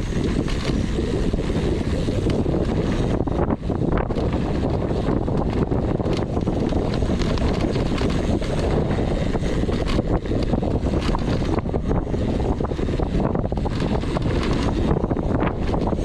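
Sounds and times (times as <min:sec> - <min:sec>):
bike rattling over rough ground: 0:00.0 - 0:16.0
wind buffeting microphone: 0:00.0 - 0:16.0.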